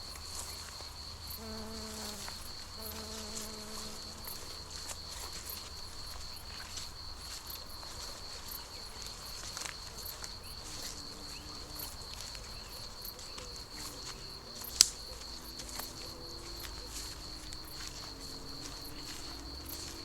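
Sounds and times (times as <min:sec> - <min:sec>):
footsteps in dry grass: 0:00.0 - 0:20.0
high insect trill: 0:00.0 - 0:20.0
bees humming: 0:01.4 - 0:04.8.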